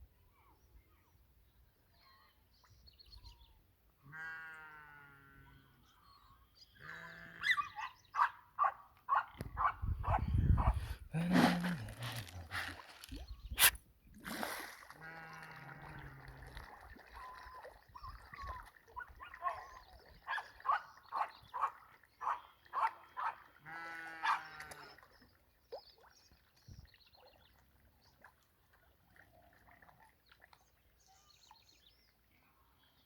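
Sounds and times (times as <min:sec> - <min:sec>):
fish splashing at water surface: 0:11.3 - 0:17.8.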